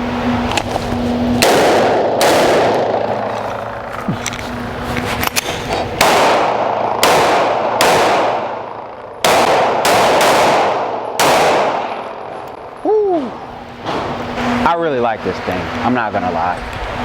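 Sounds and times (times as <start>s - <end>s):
gunshots with echoing tail: 1.4s - 3.8s, 6.0s - 12.8s.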